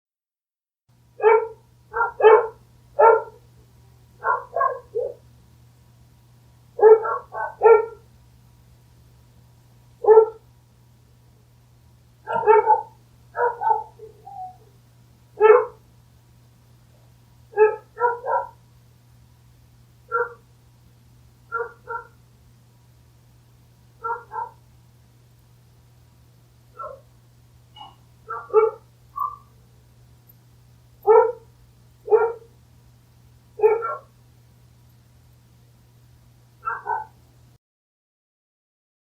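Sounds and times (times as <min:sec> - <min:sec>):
faint low hum: 0:00.9 - 0:37.6
dog barking: 0:01.2 - 0:03.4, 0:04.2 - 0:05.2, 0:06.8 - 0:08.0, 0:10.0 - 0:10.4, 0:12.2 - 0:14.7, 0:15.4 - 0:15.8, 0:17.5 - 0:18.6, 0:20.1 - 0:20.4, 0:21.5 - 0:22.2, 0:24.0 - 0:24.6, 0:26.7 - 0:27.1, 0:27.8 - 0:29.5, 0:31.0 - 0:32.5, 0:33.6 - 0:34.1, 0:36.6 - 0:37.2.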